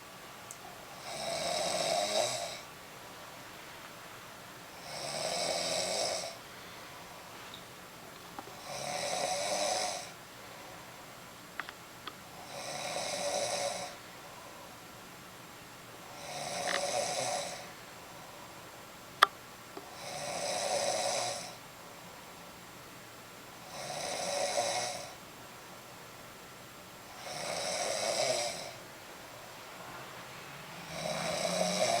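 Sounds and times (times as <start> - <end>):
woman snoring: 0.9 - 2.7, 4.8 - 6.4, 8.6 - 10.2, 12.4 - 14.0, 16.1 - 17.7, 19.9 - 21.6, 23.6 - 25.2, 27.2 - 28.8, 30.7 - 32.0.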